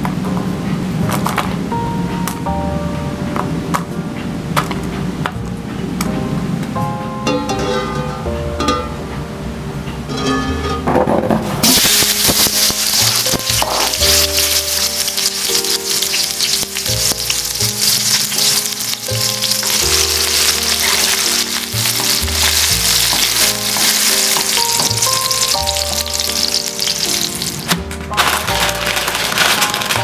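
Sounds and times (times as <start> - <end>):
background music with slow bass: 0.0 - 30.0
oil sizzling in a pan: 11.6 - 27.7.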